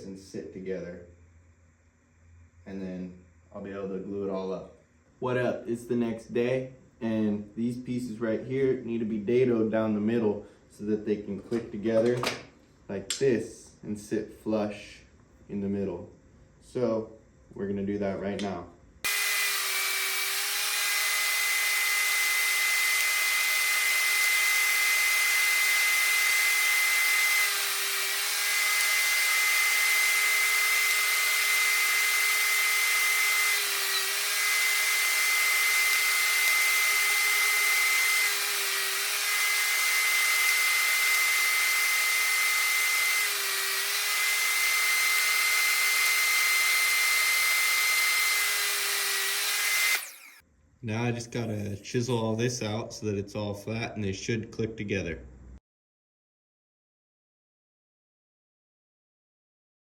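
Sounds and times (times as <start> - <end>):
power tool cutting wood: 19.0 - 50.4.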